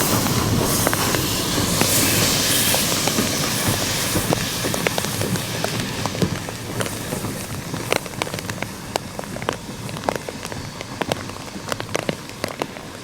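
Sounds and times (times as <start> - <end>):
rain hiss: 0.0 - 13.0
rain drops ticking: 6.0 - 13.0.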